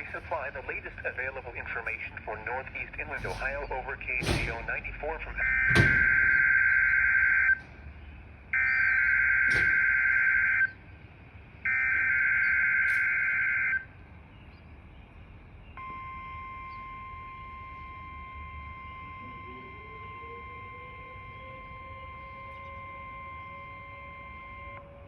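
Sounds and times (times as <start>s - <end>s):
steady warning alert tone: 15.8s - 25.0s.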